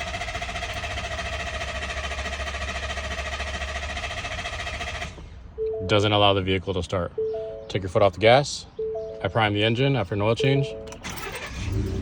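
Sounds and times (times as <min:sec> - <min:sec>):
engine cranking on starter: 0:00.0 - 0:05.4, 0:10.9 - 0:12.0.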